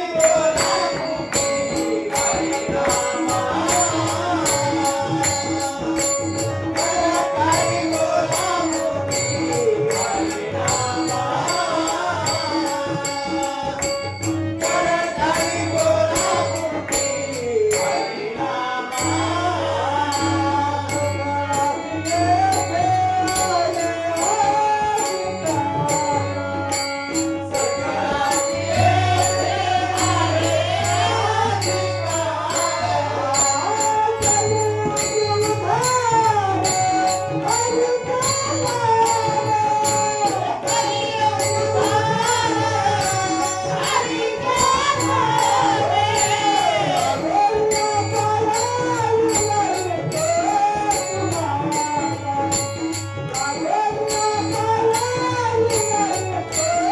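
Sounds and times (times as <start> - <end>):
steady held drone: 0.0 - 56.7
man singing devotional song: 0.0 - 56.9
tabla: 0.0 - 56.9.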